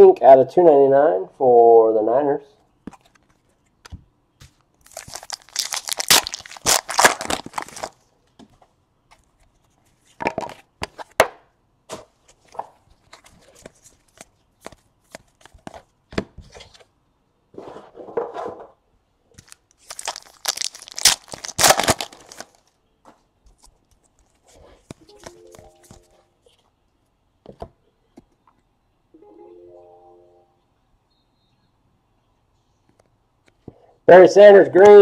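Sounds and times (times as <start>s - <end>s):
foil packs ripping: 4.8s - 8.0s, 19.4s - 22.6s
cards clicking and tapping: 13.6s - 16.3s.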